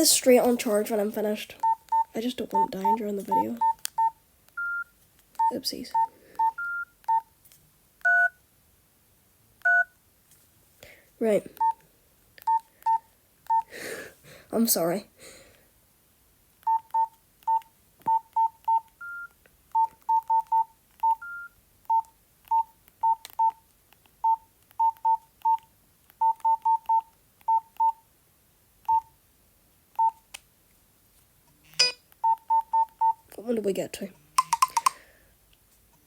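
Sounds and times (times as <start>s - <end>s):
keypad beeps: 1.6s - 7.3s, 8.0s - 8.4s, 9.6s - 9.9s, 11.6s - 11.8s, 12.5s - 13.7s, 16.6s - 23.6s, 24.2s - 28.0s, 28.9s - 29.1s, 30.0s - 30.2s, 31.8s - 33.2s, 34.4s - 35.0s.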